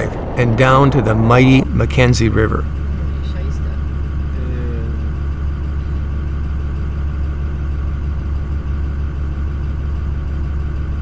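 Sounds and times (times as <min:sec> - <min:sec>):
vehicle engine drone: 0:00.0 - 0:03.5.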